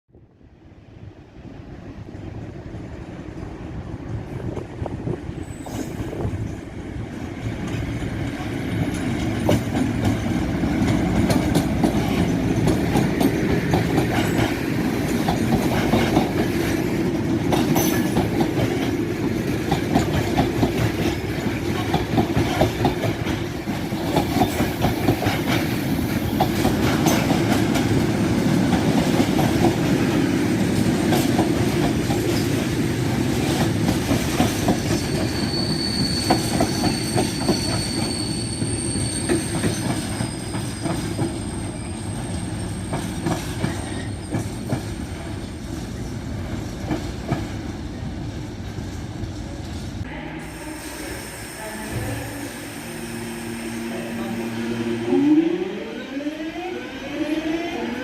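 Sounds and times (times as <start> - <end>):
train running on rails: 0.2 - 58.0.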